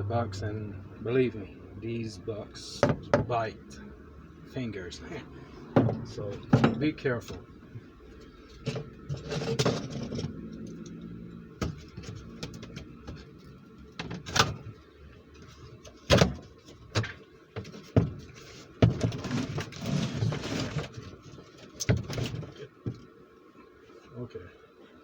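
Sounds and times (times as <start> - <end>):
packaging rustling and scraping: 8.5 - 10.3, 17.6 - 22.7.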